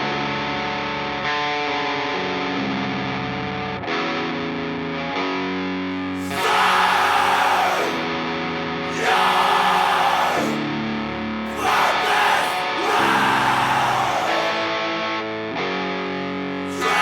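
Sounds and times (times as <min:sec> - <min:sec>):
heavy metal music: 0:06.2 - 0:08.0, 0:08.9 - 0:10.6, 0:11.5 - 0:15.0, 0:16.7 - 0:17.0.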